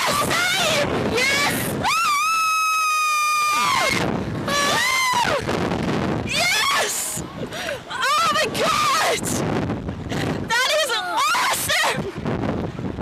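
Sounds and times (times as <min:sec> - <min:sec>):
girls screaming: 0:00.0 - 0:05.5, 0:06.3 - 0:07.2, 0:07.9 - 0:09.2, 0:11.0 - 0:12.0.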